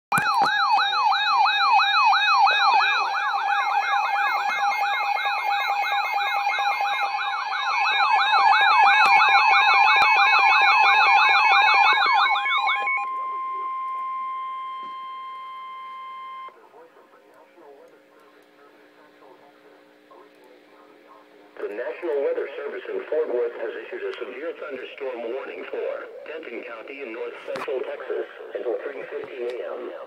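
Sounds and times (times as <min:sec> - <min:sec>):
steady warning tone: 0:00.1 - 0:30.0
sweeping electronic alert tone: 0:01.2 - 0:16.5.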